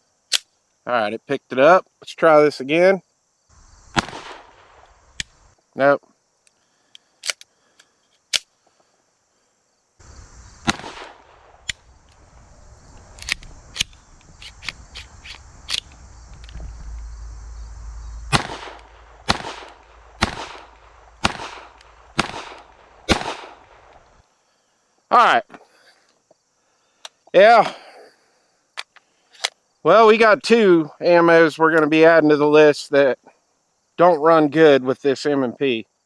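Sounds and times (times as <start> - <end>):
pistol shots with ringing tail: 3.9 - 4.7, 10.6 - 11.6, 18.2 - 23.9
sharp cracks and clicks: 3.9 - 5.4, 6.5 - 8.5, 10.6 - 12.3, 13.0 - 17.1, 18.2 - 24.1.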